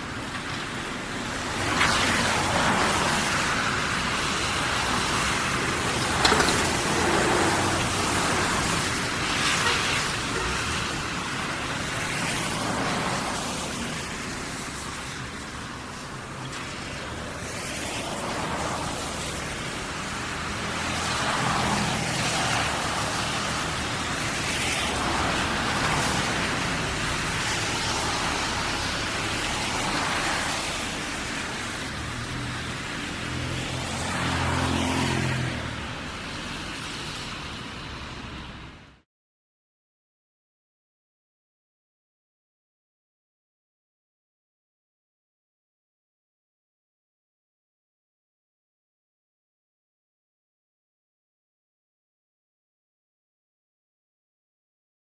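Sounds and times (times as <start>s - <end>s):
tyres hissing on wet road: 0.0s - 39.0s.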